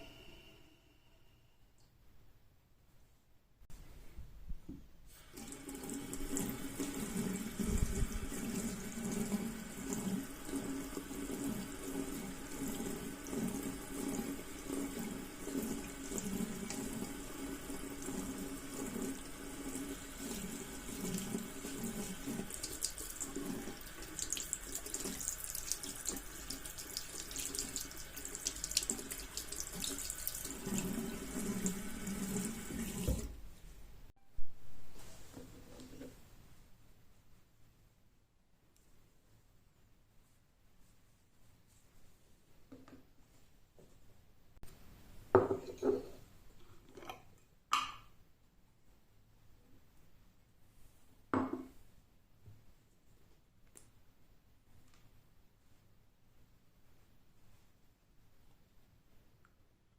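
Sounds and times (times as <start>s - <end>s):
tap water splashing into sink: 21.0s - 33.4s.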